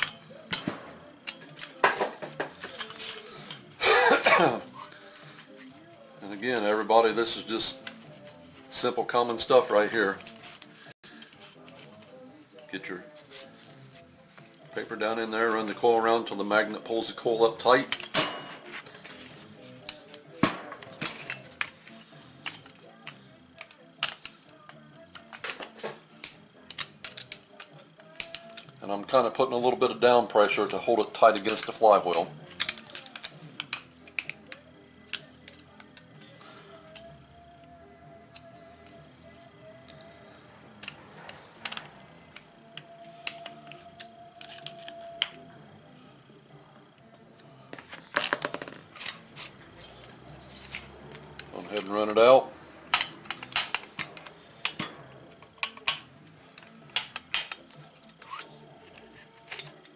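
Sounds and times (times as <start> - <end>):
hand tools clicking and tapping: 0.0 - 5.7, 17.7 - 28.8, 30.4 - 37.2, 40.8 - 45.5, 52.9 - 59.9
metal clicks and clinks: 41.6 - 41.9, 52.9 - 59.9.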